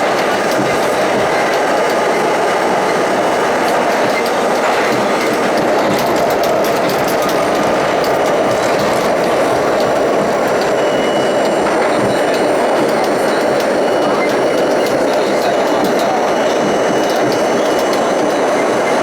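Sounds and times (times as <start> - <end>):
subway car wheels rumbling on rail: 0.0 - 19.0
wheels clicking over rails: 0.0 - 19.0.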